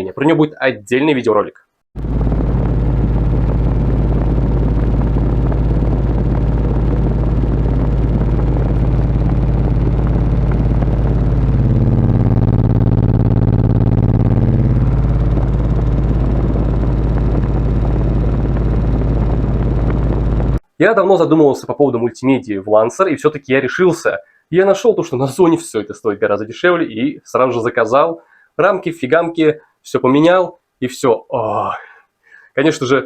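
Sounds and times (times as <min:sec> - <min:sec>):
pitched tone with overtones: 0:02.0 - 0:20.6
subwoofer playing deep bass: 0:02.0 - 0:20.6.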